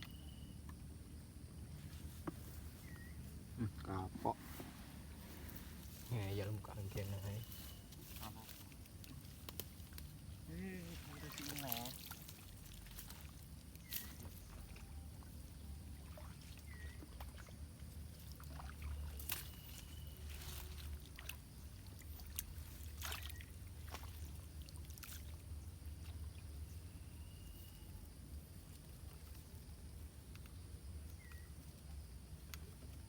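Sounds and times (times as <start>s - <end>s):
faint high chirps: 0.0s - 0.8s
water lapping: 8.2s - 26.5s.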